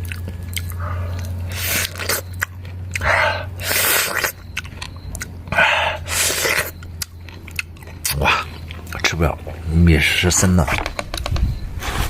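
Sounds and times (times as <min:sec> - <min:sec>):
person chewing rice: 0:00.0 - 0:09.2.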